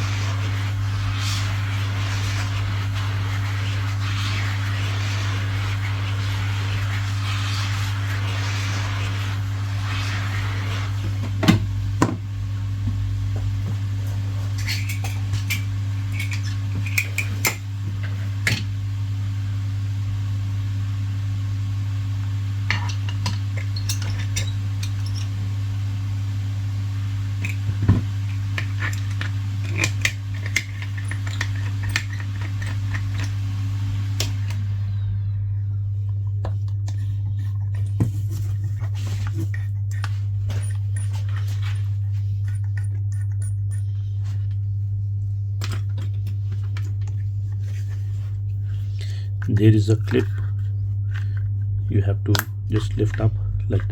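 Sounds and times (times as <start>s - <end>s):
hot air station hiss: 0.0s - 19.6s, 21.8s - 35.1s
steady low hum: 0.0s - 53.9s.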